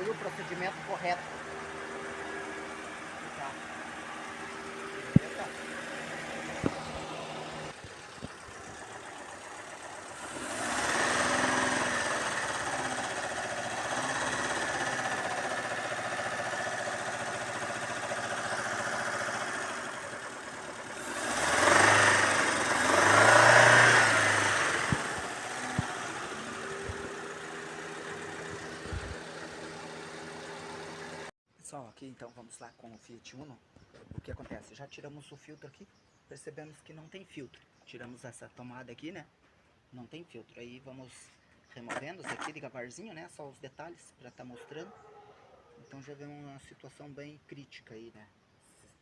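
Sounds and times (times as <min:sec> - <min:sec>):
car engine revving: 0:00.0 - 0:31.3.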